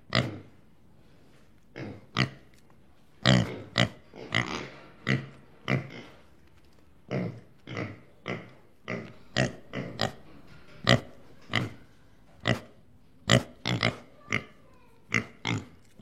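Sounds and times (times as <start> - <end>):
pig grunting: 13.3 - 16.0.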